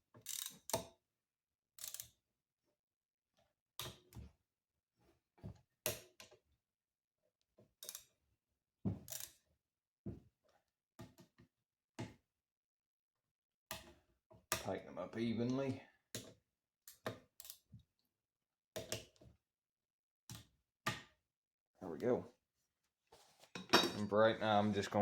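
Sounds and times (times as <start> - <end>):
metallic clicks of hand tools and bolts: 0.2 - 0.9, 1.8 - 2.1.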